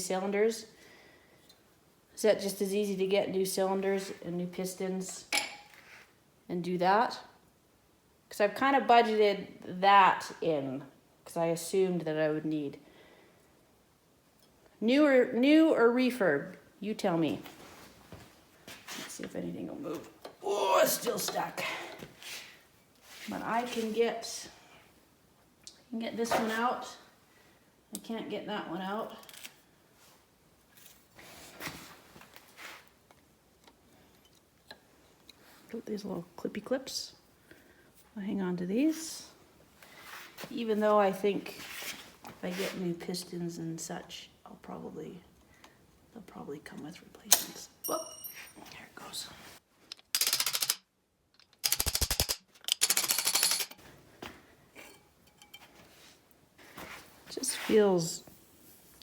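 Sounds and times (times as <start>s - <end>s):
rapid metallic clicking: 49.9s - 50.8s, 51.4s - 53.8s.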